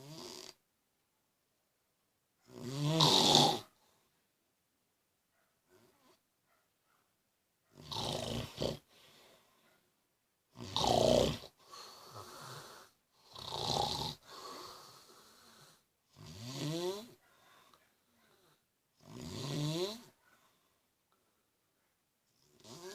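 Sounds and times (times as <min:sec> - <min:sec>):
man snoring loudly: 0:00.0 - 0:00.6, 0:02.5 - 0:03.7, 0:07.8 - 0:08.8, 0:10.6 - 0:17.2, 0:19.0 - 0:20.1, 0:22.5 - 0:22.9
soft breath out: 0:08.8 - 0:09.9, 0:14.2 - 0:15.9, 0:17.2 - 0:18.6.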